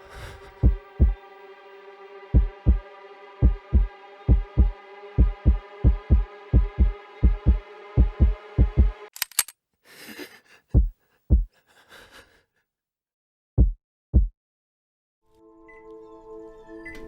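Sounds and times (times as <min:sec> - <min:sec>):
held drone: 0:00.0 - 0:09.1
heartbeat thumps: 0:00.6 - 0:01.2, 0:02.4 - 0:02.8, 0:03.4 - 0:09.0, 0:10.7 - 0:11.5, 0:13.6 - 0:14.3
sharp clicks: 0:09.1 - 0:09.6.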